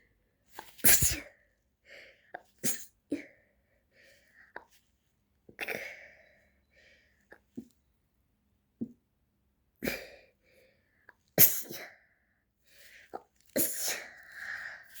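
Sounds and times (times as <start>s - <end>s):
girl sneezing: 0.7s - 1.3s, 2.6s - 3.0s, 11.4s - 12.0s
short breaths: 13.9s - 15.0s.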